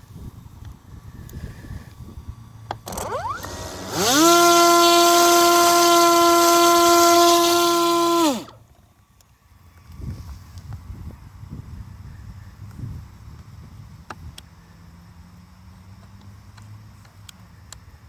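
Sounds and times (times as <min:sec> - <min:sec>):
drone propeller motor whine: 0:01.6 - 0:08.6.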